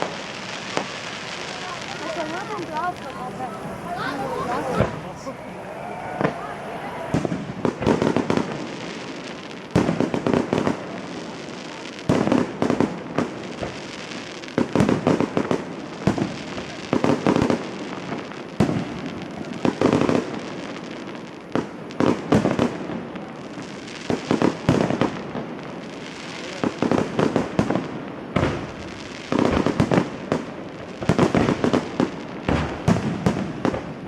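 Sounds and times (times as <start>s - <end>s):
fireworks bangs and crackling: 0.0s - 34.0s.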